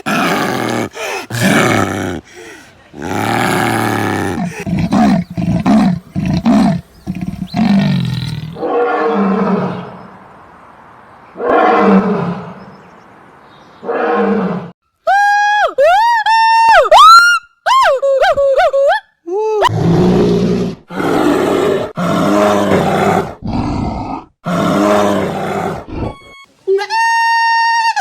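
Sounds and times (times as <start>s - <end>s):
animal grunting: 0.0s - 9.8s, 19.7s - 26.2s
large animal roaring: 0.0s - 10.0s, 11.4s - 12.7s, 19.8s - 26.1s.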